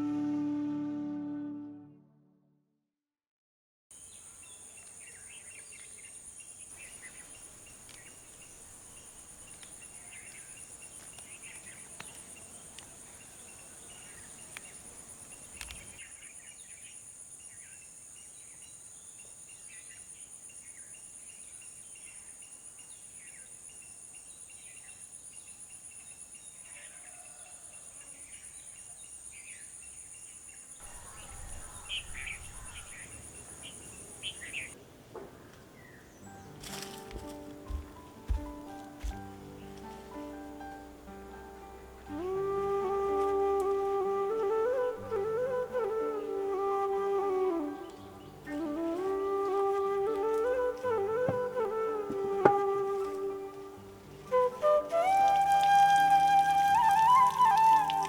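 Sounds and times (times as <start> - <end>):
insects trilling: 4.0 - 34.8, 52.4 - 58.0.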